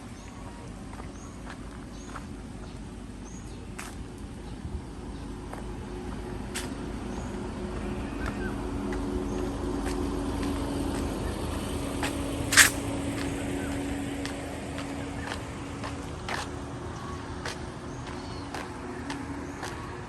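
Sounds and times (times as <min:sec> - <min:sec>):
sharp high-pitched sound: 0:12.5 - 0:12.8.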